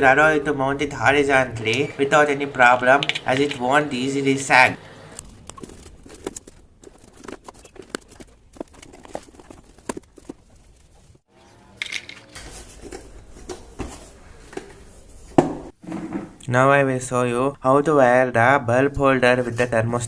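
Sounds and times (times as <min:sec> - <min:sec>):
hands clicking and tapping parts: 0:03.0 - 0:03.6
cardboard rustling: 0:05.2 - 0:11.2.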